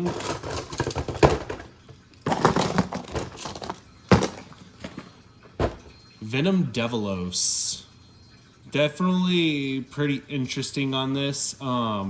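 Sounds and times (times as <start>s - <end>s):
toy packaging rustling and clicking: 0.0s - 1.7s, 2.3s - 5.9s.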